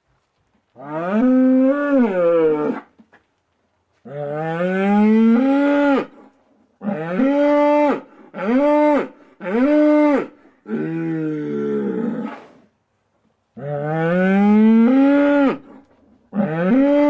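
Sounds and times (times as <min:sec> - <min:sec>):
cow mooing: 0:16.4 - 0:17.0.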